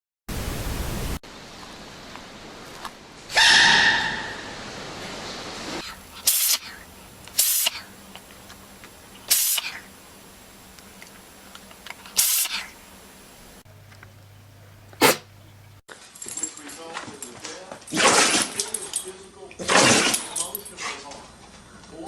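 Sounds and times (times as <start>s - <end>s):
animal sneezing: 14.9s - 15.5s.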